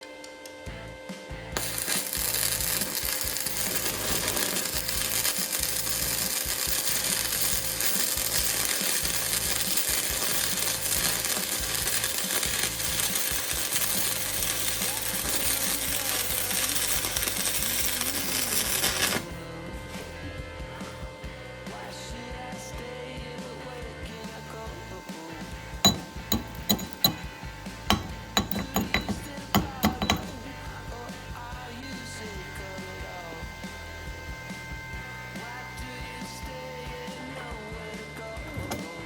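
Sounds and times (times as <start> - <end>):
arc welding crackle: 1.6 - 19.4, 25.8 - 30.6.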